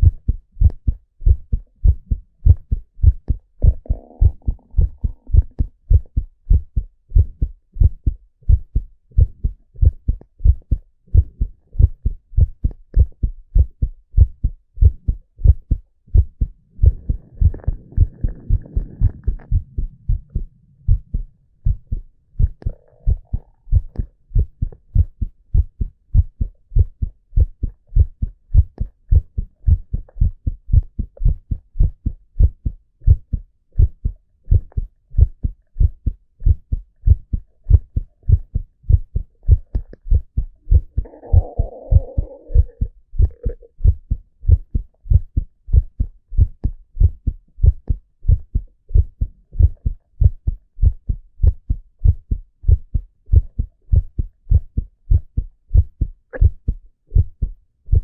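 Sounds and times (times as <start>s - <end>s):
soft low rushing noise: 0.0s - 28.6s, 35.2s - 45.8s
heart beating: 0.0s - 58.0s.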